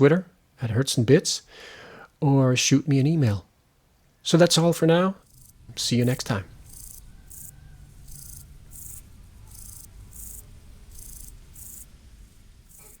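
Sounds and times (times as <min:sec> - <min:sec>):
low background rumble: 0:04.3 - 0:13.0
crickets chirping: 0:05.0 - 0:13.0.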